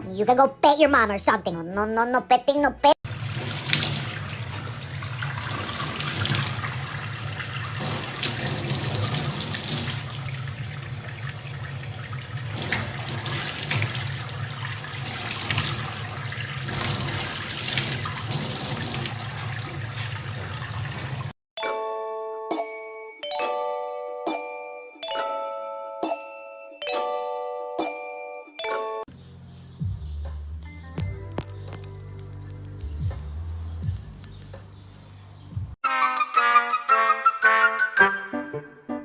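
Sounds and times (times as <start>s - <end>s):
water running: 3.1s - 21.4s.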